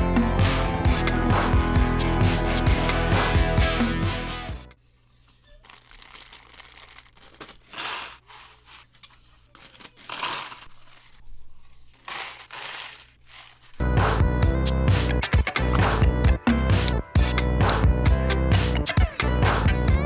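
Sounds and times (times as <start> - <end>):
plastic bricks rattling and clicking: 5.6 - 13.8.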